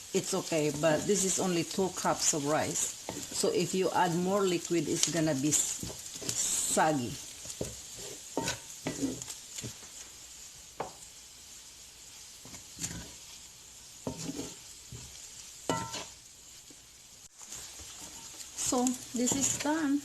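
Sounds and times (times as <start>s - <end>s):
fried rice sizzling in a pan: 0.0s - 20.0s
utensil scraping a pan: 0.2s - 3.6s, 5.0s - 9.8s, 12.4s - 13.4s, 14.0s - 16.2s, 17.4s - 19.8s.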